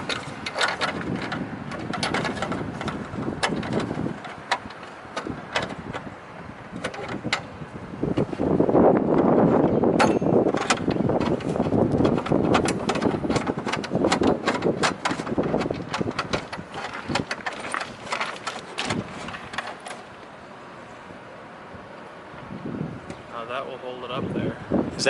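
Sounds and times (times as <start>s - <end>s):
wind rushing on microphone: 0.0s - 18.1s, 21.7s - 25.0s.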